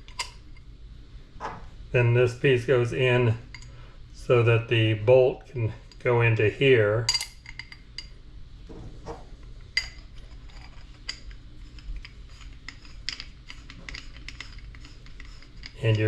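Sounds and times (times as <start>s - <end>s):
small metal parts clicking: 9.8s - 16.0s.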